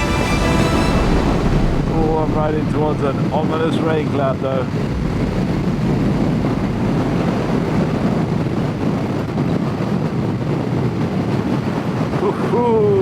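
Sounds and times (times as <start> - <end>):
wind on microphone: 0.4 - 13.0
motorcycle engine running: 4.6 - 10.2.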